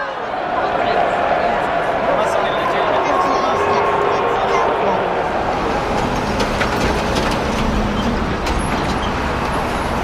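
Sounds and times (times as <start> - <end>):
road traffic: 1.0 - 10.0
heavy vehicle engine rumble: 5.3 - 10.0.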